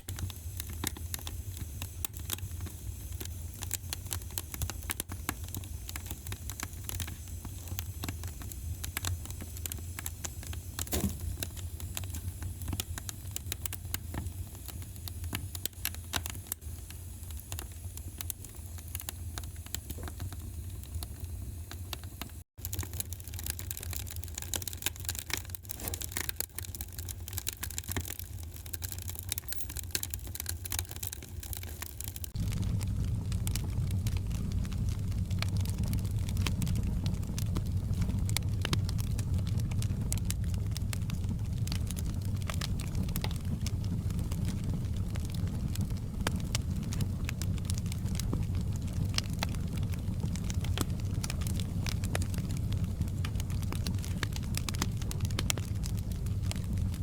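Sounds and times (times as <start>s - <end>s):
wood fire crackling: 0.0s - 57.0s
low rumble: 32.4s - 49.5s.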